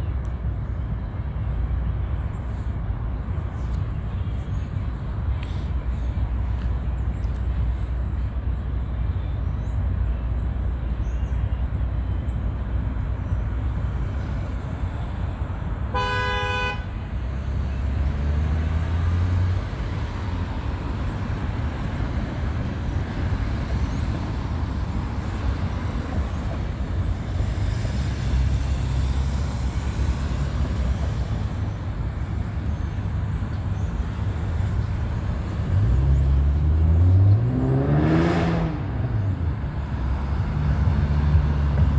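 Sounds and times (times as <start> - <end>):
passing road traffic: 0.0 - 41.9
car horn toot: 15.9 - 16.9
vehicle engine revving: 17.4 - 19.8, 35.6 - 41.9
wind rumbling on microphone: 38.8 - 41.9.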